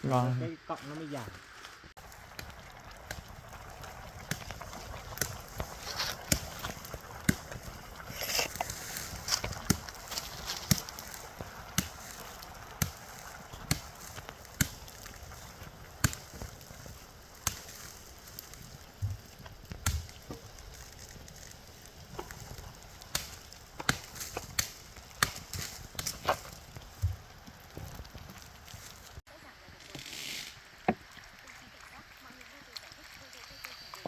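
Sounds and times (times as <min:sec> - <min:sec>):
wood snapping: 0:04.2 - 0:29.0.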